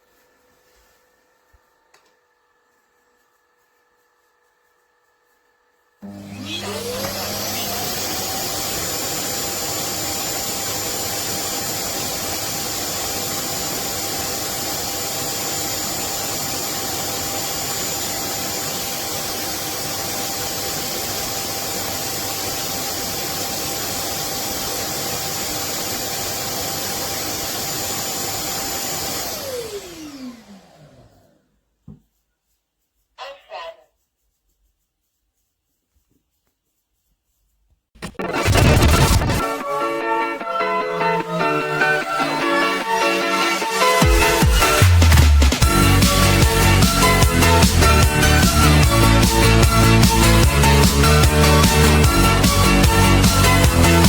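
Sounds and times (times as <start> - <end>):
vacuum motor whine and rushing: 6.0 - 31.4.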